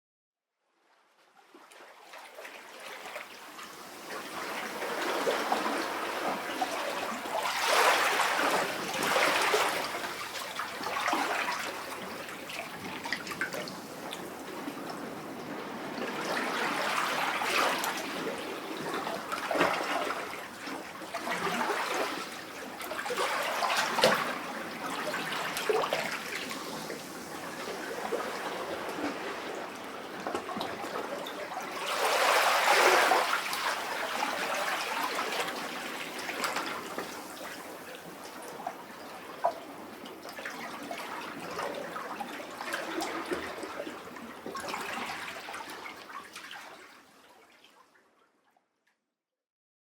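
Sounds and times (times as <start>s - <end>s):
sea waves surging in rock cavity: 2.6s - 46.1s
water gurgling and splashing: 4.8s - 35.6s.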